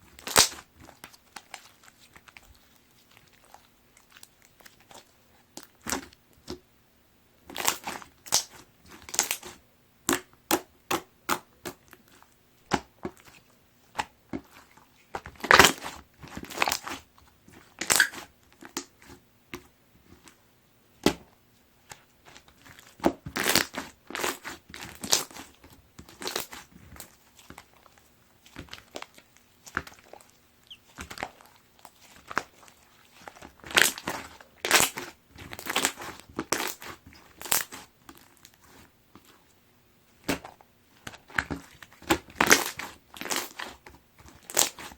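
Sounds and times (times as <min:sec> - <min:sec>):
slime squishing and popping: 0:00.2 - 0:02.6.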